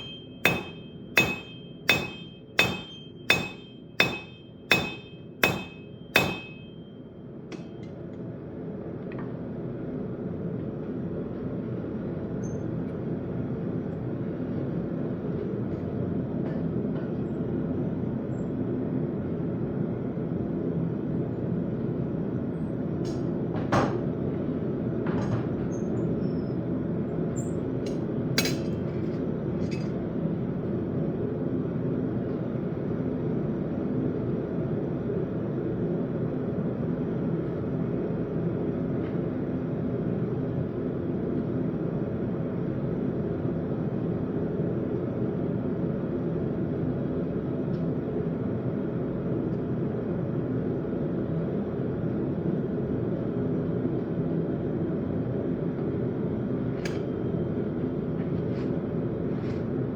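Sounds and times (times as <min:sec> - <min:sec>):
sharp metallic clinks: 0:00.0 - 0:06.8.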